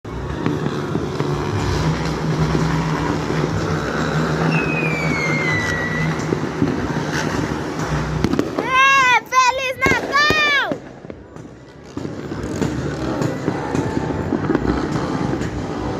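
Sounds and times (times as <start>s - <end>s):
motorcycle engines rumbling: 0.0s - 15.9s
high whistle sliding down: 4.5s - 6.3s.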